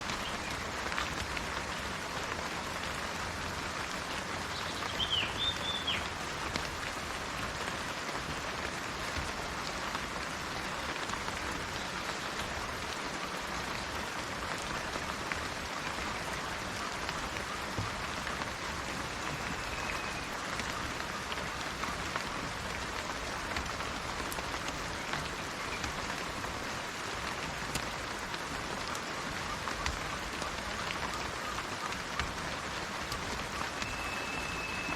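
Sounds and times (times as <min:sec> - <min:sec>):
steady rain: 0:00.0 - 0:34.9
whistled bird note: 0:19.4 - 0:20.3, 0:33.6 - 0:34.9
bird chirps: 0:33.6 - 0:34.9.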